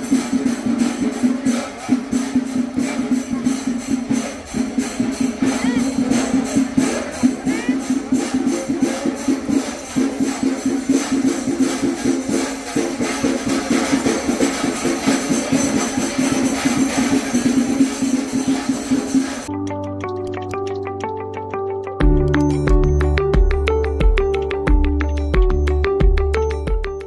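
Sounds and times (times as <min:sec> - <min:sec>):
hand cymbals ringing: 0:00.0 - 0:19.5
rapid dense drumming: 0:00.0 - 0:19.5.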